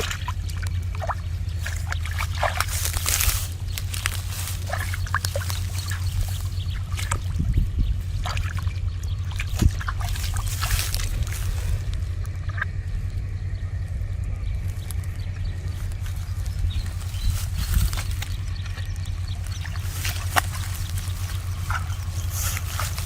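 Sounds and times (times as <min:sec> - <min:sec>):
water sloshing and splashing: 0:00.0 - 0:12.7, 0:15.7 - 0:23.0
low rumble: 0:00.0 - 0:23.0.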